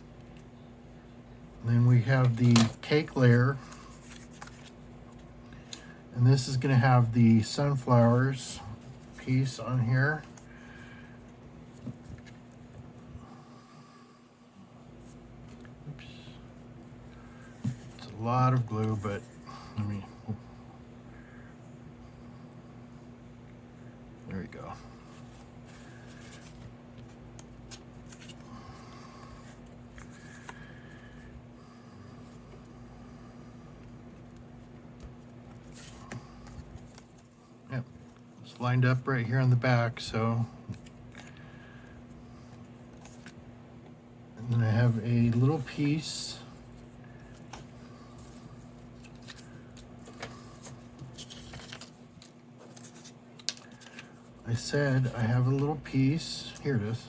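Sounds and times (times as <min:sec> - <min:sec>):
steady low hum: 0:00.0 - 0:57.0
paper rustling: 0:01.9 - 0:06.5, 0:25.1 - 0:31.2, 0:46.6 - 0:56.7.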